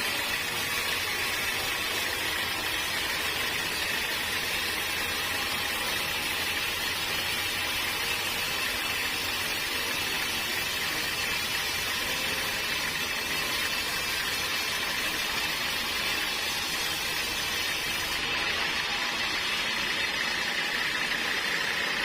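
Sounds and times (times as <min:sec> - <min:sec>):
sawmill machinery drone: 0:00.0 - 0:22.0
machinery hiss: 0:13.4 - 0:21.4.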